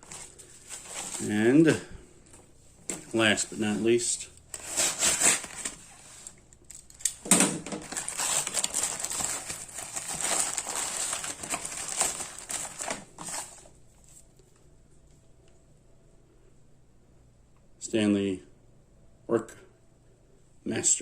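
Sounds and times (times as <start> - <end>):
bag crinkling and rustling: 0.0 - 1.9, 2.9 - 7.0, 7.6 - 14.3.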